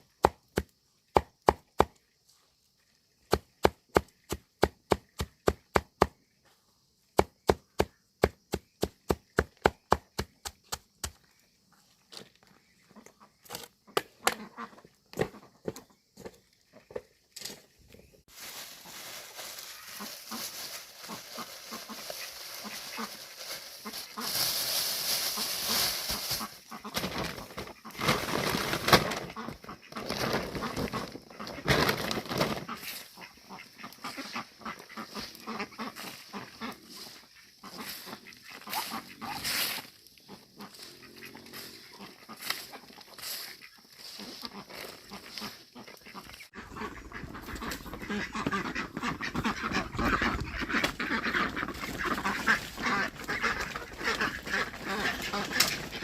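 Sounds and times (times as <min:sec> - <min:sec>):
farm animals calling: 0:18.0 - 0:28.4, 0:29.0 - 0:56.0.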